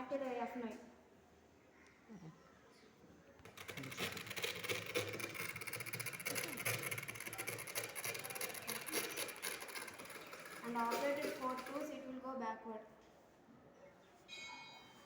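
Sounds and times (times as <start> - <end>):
small electric motors whirring: 3.5 - 12.0.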